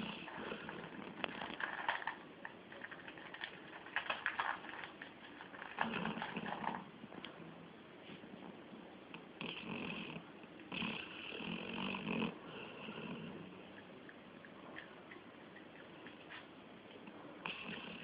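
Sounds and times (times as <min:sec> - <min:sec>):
pet snoring: 0:00.0 - 0:01.1, 0:09.4 - 0:13.6, 0:17.4 - 0:18.0.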